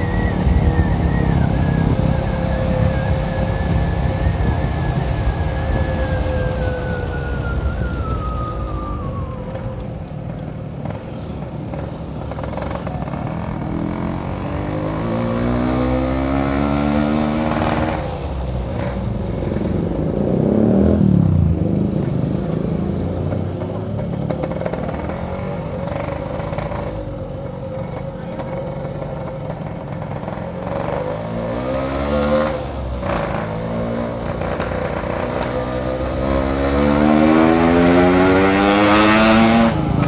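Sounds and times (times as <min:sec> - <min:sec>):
motorcycle engine revving: 0:09.2 - 0:40.0.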